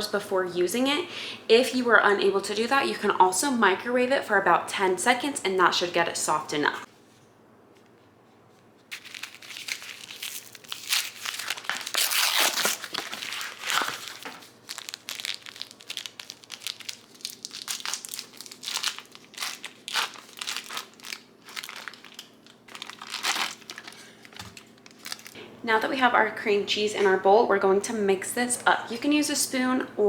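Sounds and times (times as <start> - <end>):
wrapper crinkling: 8.9 - 25.4.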